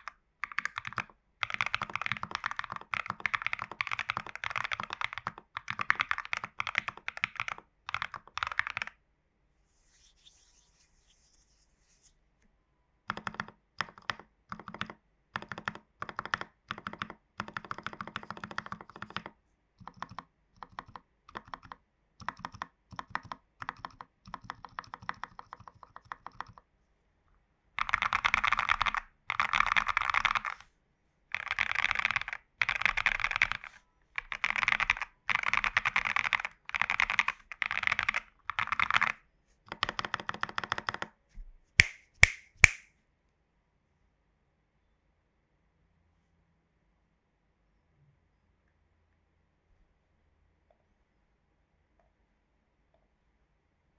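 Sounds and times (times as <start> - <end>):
mechanical keyboard typing: 0.0 - 8.9, 13.1 - 26.6, 27.8 - 30.6, 31.3 - 41.1.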